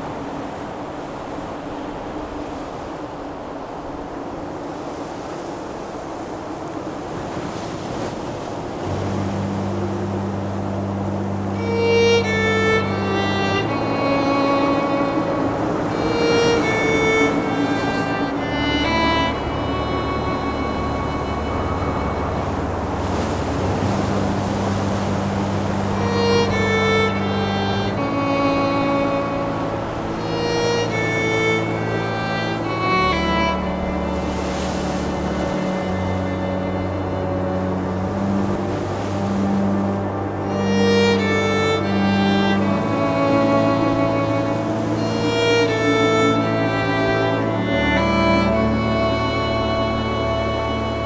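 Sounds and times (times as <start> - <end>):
wind blowing over microphone: 0.0 - 40.5
bowed strings holding long notes: 8.8 - 51.0.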